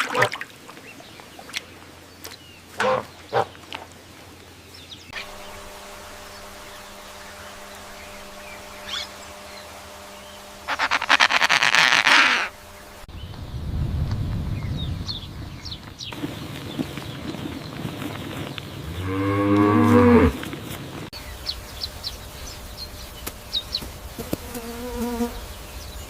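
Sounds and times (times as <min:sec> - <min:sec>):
faint steady hum: 0:03.8 - 0:13.1
rapid pulsing animal trill: 0:10.6 - 0:12.6
animal cries: 0:10.7 - 0:12.6.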